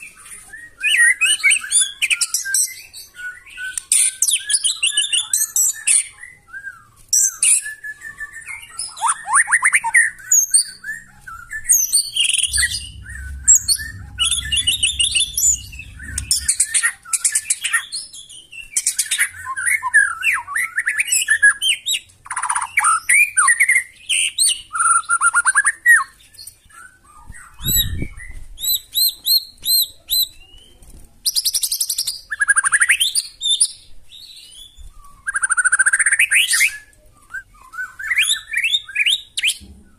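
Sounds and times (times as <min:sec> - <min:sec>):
bird singing trills and whistles: 0:00.0 - 0:39.8
low rumble: 0:11.5 - 0:17.1.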